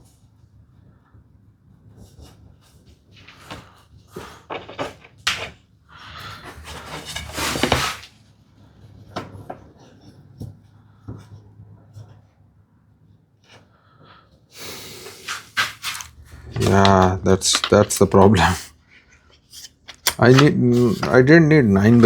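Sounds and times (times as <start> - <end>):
rattling scrape: 6.2 - 8.1
hand tools clicking and knocking: 15.9 - 18.6, 19.6 - 21.2.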